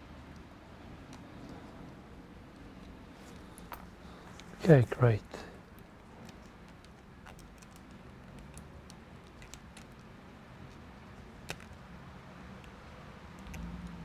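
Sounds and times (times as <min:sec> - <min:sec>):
low steady background noise: 0:00.0 - 0:14.0
small clicks and taps of laptop parts: 0:05.7 - 0:12.0.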